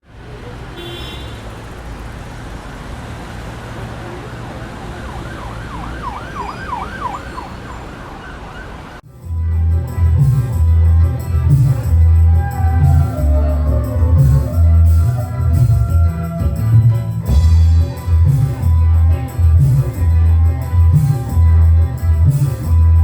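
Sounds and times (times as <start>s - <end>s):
siren yelping: 4.9s - 9.0s
band music with heavy bass: 9.0s - 23.0s.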